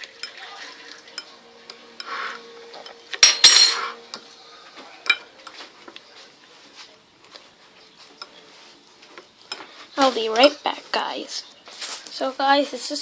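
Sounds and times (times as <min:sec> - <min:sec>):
spoon stirring batter in bowl: 0:00.0 - 0:03.2, 0:05.0 - 0:11.0
spoon clinking against bowl: 0:00.0 - 0:04.3, 0:05.0 - 0:05.6.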